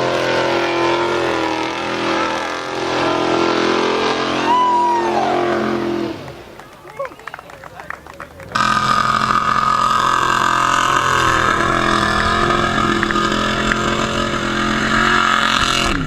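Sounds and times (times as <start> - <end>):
car engine at high revs: 0.0 - 6.9, 8.3 - 16.0.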